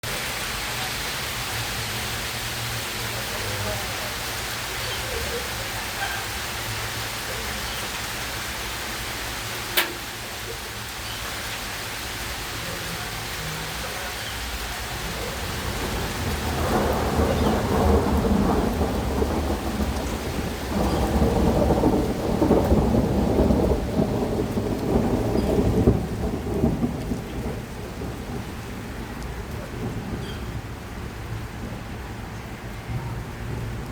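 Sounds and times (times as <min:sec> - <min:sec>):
hail and rain falling: 0:00.0 - 0:33.9
storm rumbling: 0:01.7 - 0:33.9
sharp crack: 0:09.7 - 0:10.4.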